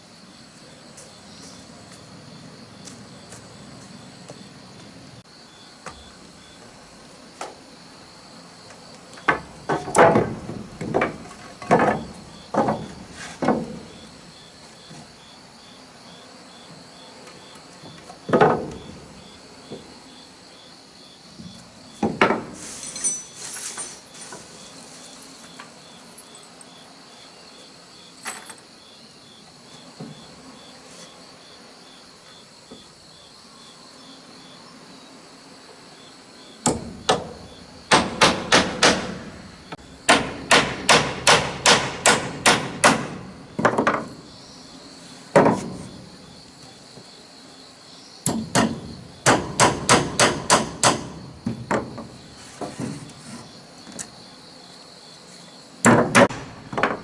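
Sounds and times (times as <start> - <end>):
insect chirping: 0.0 - 57.0
timber knocks and thuds: 9.2 - 14.1, 17.8 - 19.1, 21.4 - 22.6, 30.0 - 30.3, 36.6 - 39.4, 40.1 - 44.3, 45.3 - 46.1, 48.3 - 53.2, 55.8 - 57.0.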